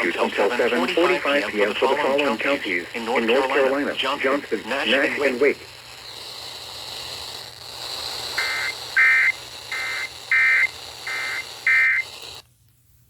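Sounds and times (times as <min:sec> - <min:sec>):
radio hiss: 0:00.0 - 0:06.4, 0:07.8 - 0:12.4
buzzy two-tone data bursts: 0:00.0 - 0:12.4.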